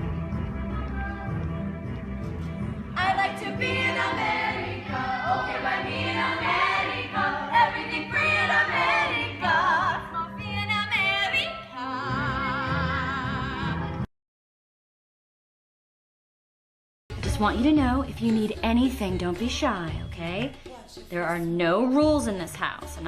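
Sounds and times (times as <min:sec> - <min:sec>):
musical accompaniment: 0:00.0 - 0:14.1.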